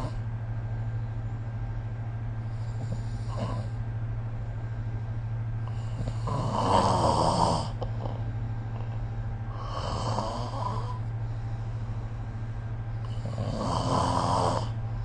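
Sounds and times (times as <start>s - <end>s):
steady low hum: 0.0s - 15.0s
person snoring: 2.6s - 3.8s, 5.6s - 8.3s, 9.5s - 11.1s, 13.0s - 14.8s.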